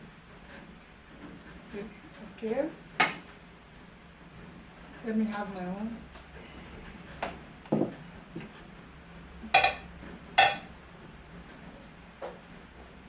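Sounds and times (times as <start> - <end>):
utensil clinking against dishes: 9.4 - 10.7.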